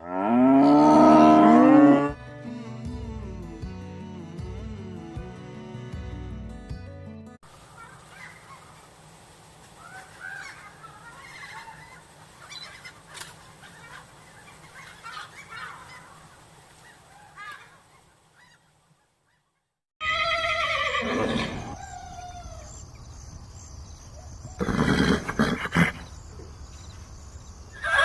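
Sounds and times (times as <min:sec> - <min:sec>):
loud falling animal call: 0:09.7 - 0:14.0, 0:20.0 - 0:22.7, 0:27.8 - 0:28.0.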